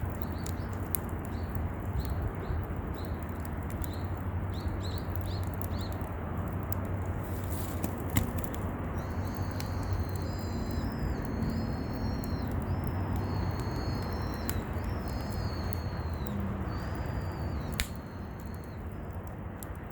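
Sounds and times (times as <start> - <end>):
bird calling: 9.0 - 18.8
sharp click: 17.8 - 18.0.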